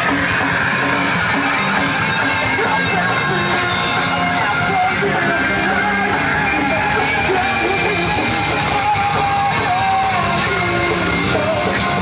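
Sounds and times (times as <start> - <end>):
distorted guitars: 0.0 - 12.0
drums: 0.0 - 12.0.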